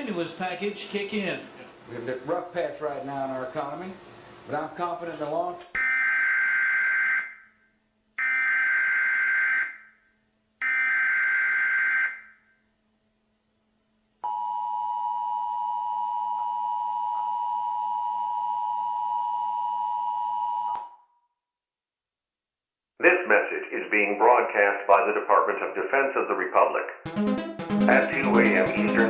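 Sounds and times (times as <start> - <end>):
two-tone attention signal: 27.1 - 29.0.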